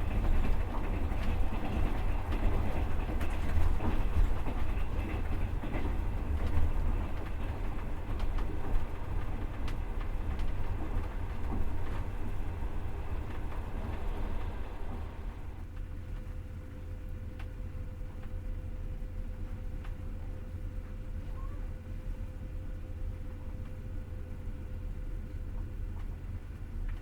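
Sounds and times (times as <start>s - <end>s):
wheels clattering over rails: 0.0s - 15.6s
train wheels rumbling on track: 0.0s - 16.2s.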